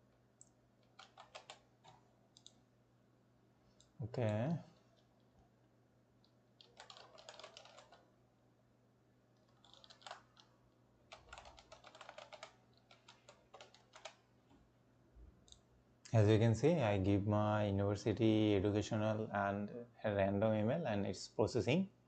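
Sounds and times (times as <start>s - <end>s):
faint keyboard typing: 0.4s - 2.6s, 6.2s - 8.1s, 9.4s - 14.6s.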